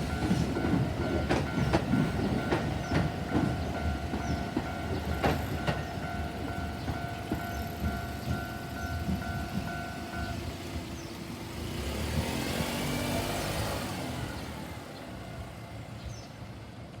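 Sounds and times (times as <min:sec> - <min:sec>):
railroad crossing bell ringing: 0:00.0 - 0:10.6.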